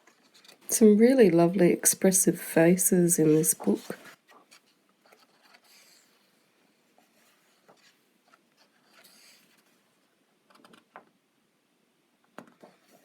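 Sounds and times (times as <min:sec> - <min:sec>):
paper pages turning: 0:03.3 - 0:06.3.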